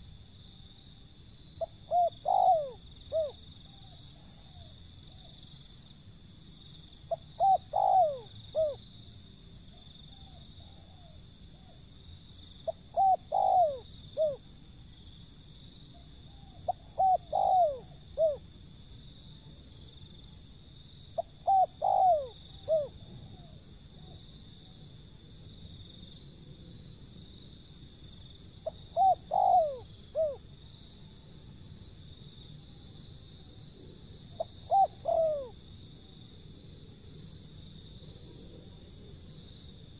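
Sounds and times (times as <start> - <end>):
dove cooing: 1.6 - 5.4, 7.1 - 8.8, 12.6 - 14.4, 16.3 - 18.5, 21.2 - 24.8, 28.6 - 30.4, 34.3 - 35.6.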